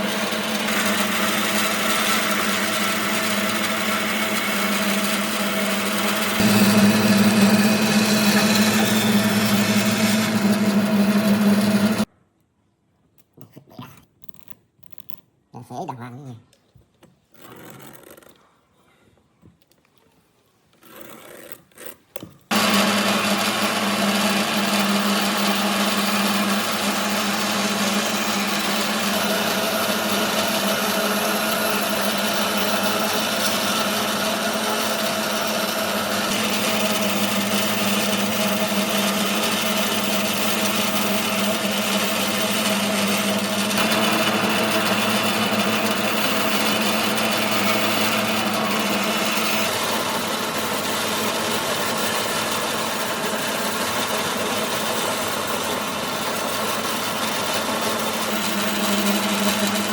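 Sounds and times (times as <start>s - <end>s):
power tool working wood: 0.0s - 12.1s, 22.5s - 59.9s.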